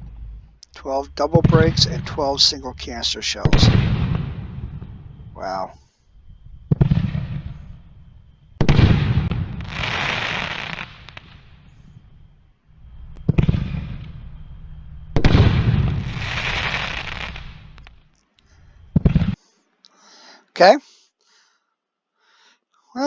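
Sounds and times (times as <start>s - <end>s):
firework bangs: 1.3s - 2.8s, 3.4s - 5.2s, 6.6s - 12.2s, 13.1s - 14.4s, 15.0s - 18.0s, 18.9s - 19.4s
firework burst with hissing tail: 8.6s - 12.0s, 15.1s - 18.0s.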